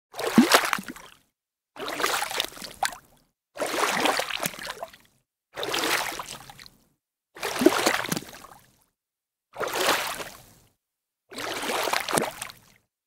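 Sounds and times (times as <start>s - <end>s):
water splashing: 0.2s - 1.0s, 7.4s - 8.2s.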